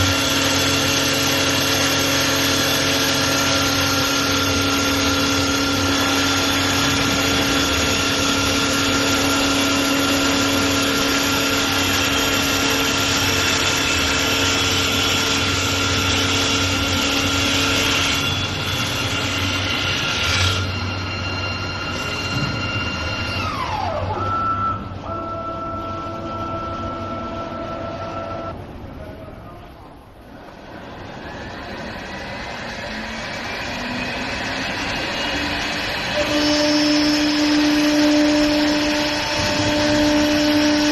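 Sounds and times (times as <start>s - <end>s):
tool cutting wood: 0.0s - 20.7s
wood lathe running: 0.0s - 24.2s, 32.0s - 40.9s
motor whine: 0.0s - 28.6s.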